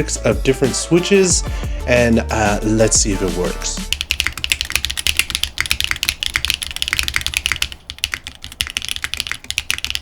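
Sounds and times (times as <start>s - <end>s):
mechanical keyboard typing: 3.8s - 10.0s.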